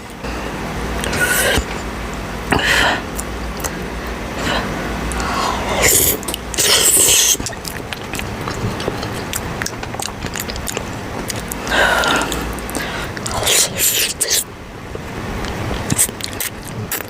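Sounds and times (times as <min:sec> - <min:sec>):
loud biting mouth sounds: 0:04.4 - 0:14.5, 0:15.4 - 0:17.0
wet chewing clicks: 0:05.1 - 0:14.4, 0:15.4 - 0:17.0.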